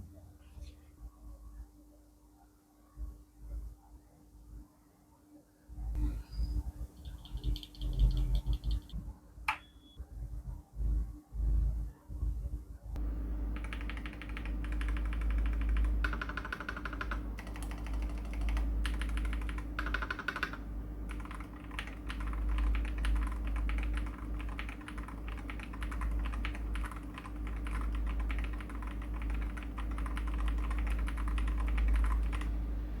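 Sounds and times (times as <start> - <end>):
steady low hum: 0.0 - 33.0
mechanical keyboard typing: 7.0 - 8.9, 13.5 - 32.5.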